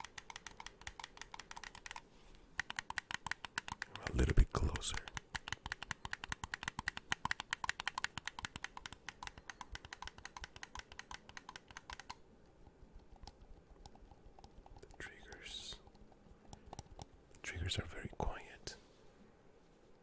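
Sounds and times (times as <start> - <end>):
game controller buttons clicking: 0.0 - 2.0, 2.6 - 12.2, 13.1 - 17.2.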